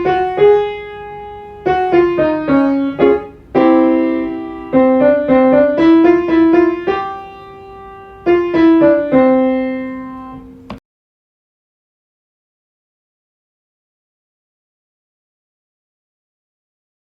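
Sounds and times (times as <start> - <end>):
piano scale runs and chords: 0.0 - 10.8.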